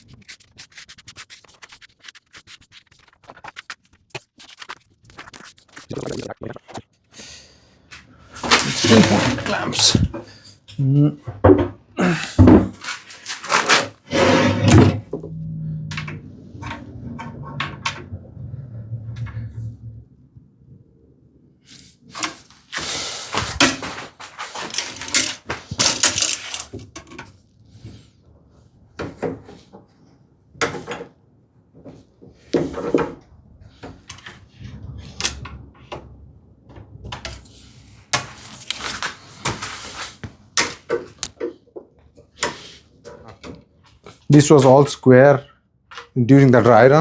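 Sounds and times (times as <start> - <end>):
wooden clamps clunking and scraping: 8.4 - 10.2, 11.3 - 15.3, 23.4 - 27.3.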